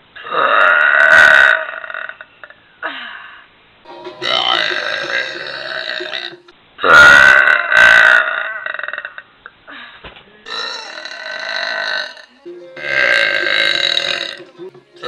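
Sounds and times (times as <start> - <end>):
woman burping loudly: 4.2 - 9.3, 10.5 - 14.5.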